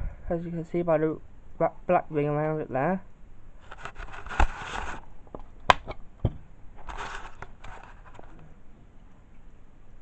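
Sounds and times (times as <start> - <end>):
scraping and rustling: 3.6 - 5.4, 6.8 - 8.6.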